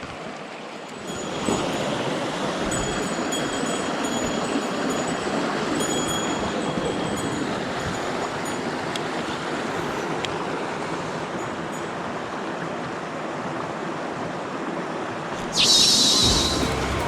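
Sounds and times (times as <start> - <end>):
stream water rushing: 0.0 - 17.0
high-pitched wavering tone: 15.4 - 17.0.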